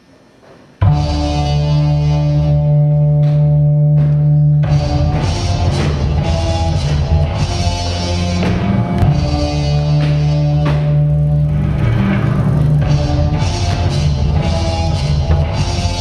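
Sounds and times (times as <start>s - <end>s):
music with heavy bass: 0.8s - 16.0s
drum hits: 3.2s - 16.0s.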